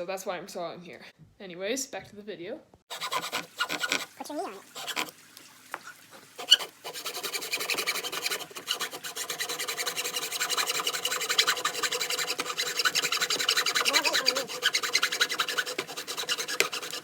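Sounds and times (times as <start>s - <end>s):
hand saw cutting wood: 2.9s - 5.2s, 5.8s - 17.0s.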